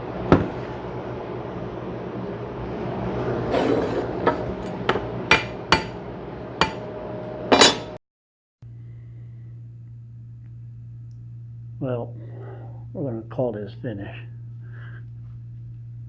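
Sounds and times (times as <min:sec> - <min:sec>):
sharp metallic knocks: 0:04.3 - 0:06.0, 0:06.6 - 0:06.9
low steady hum: 0:08.6 - 0:16.0.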